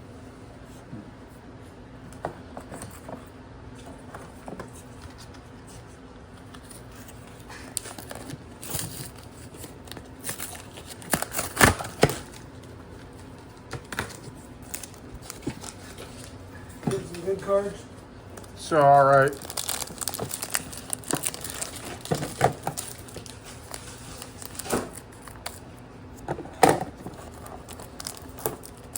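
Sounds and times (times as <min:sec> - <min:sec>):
wrappers crinkling: 0:06.5 - 0:25.7, 0:27.0 - 0:28.9.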